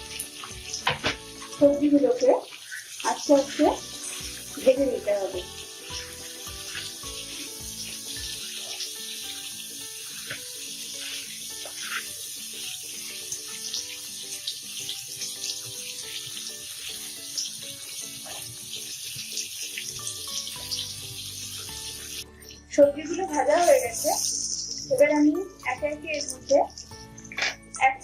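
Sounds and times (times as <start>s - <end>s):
soft background music: 0.0s - 28.0s
vegetables sizzling in oil: 0.0s - 28.0s.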